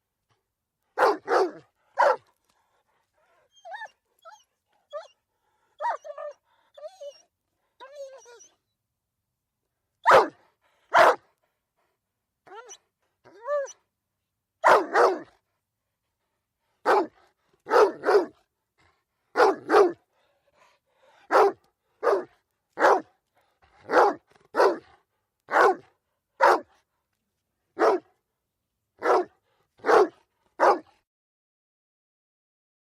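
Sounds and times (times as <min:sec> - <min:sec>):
dog barking: 0:01.0 - 0:02.3, 0:10.0 - 0:11.3, 0:14.6 - 0:15.4, 0:16.8 - 0:18.4, 0:19.3 - 0:20.0, 0:21.3 - 0:23.1, 0:23.8 - 0:26.8, 0:27.8 - 0:28.1, 0:29.0 - 0:31.0.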